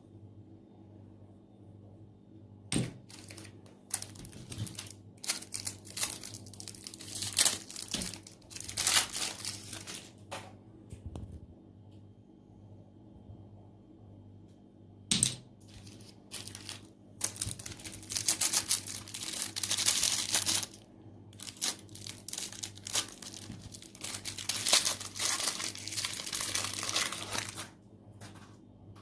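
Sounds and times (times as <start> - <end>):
grinder crunching: 21.4 - 27.6.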